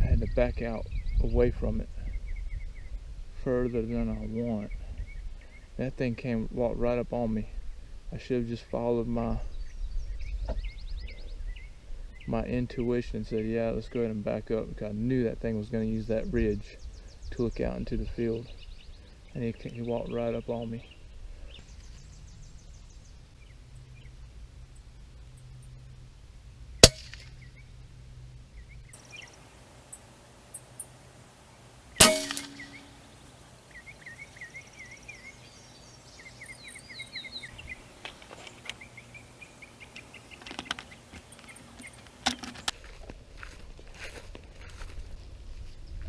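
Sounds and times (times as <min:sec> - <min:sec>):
air rifle shots: 0:26.8 - 0:27.2, 0:29.0 - 0:33.8.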